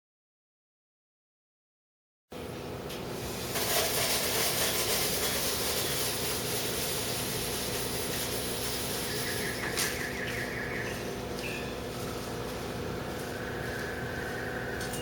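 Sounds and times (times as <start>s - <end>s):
hiss: 3.2s - 10.0s.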